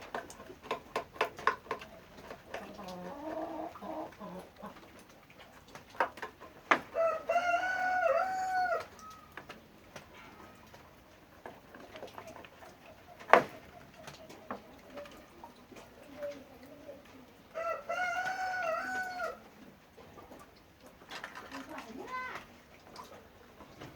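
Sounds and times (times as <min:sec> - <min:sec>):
rooster crowing: 0:06.9 - 0:09.3, 0:17.6 - 0:19.4.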